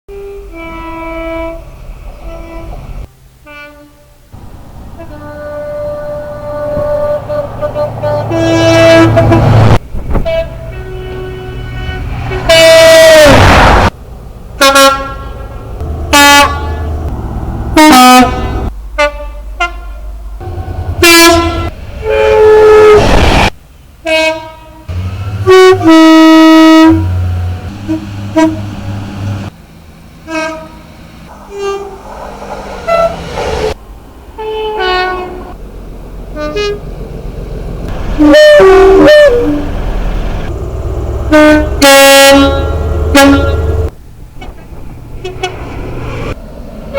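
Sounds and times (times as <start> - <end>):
two-tone train horn blasts: 0.1 - 4.3, 4.9 - 13.6, 14.6 - 17.0, 17.7 - 23.3, 24.0 - 29.0, 30.3 - 30.9, 31.5 - 32.0, 32.9 - 33.8, 34.4 - 35.6, 36.3 - 36.9, 38.0 - 39.7, 41.1 - 44.5, 45.2 - 45.7
low diesel engine hum: 0.1 - 22.7, 23.5 - 46.9.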